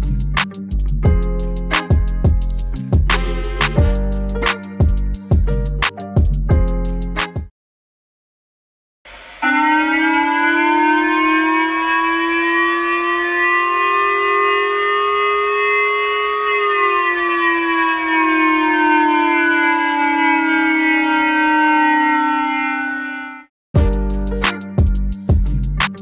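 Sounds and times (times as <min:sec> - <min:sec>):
electronic siren wail: 0:09.4 - 0:23.5.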